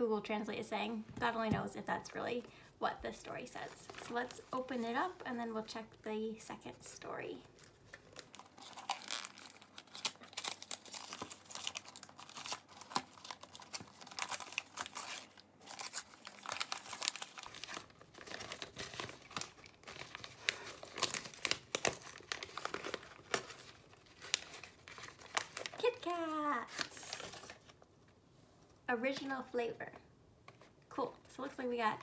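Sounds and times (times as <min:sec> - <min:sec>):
paper rustling and crackling: 0:07.5 - 0:27.8
cardboard packaging tearing: 0:07.6 - 0:27.7.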